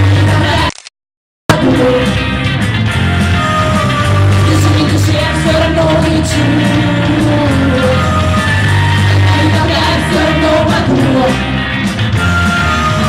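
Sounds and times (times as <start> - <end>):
person singing: 0.0 - 0.7, 1.5 - 2.3, 4.4 - 11.6
steady bass: 0.0 - 0.8, 1.5 - 13.0.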